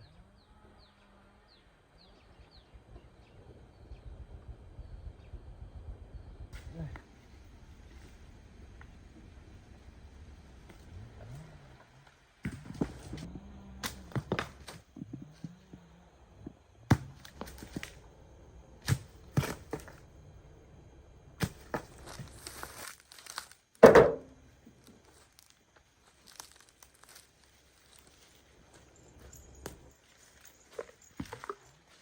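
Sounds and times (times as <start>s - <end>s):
sharp knocks and cracks: 21.4s - 24.4s
rustling: 21.4s - 32.0s
heavy thunk: 23.8s - 24.4s.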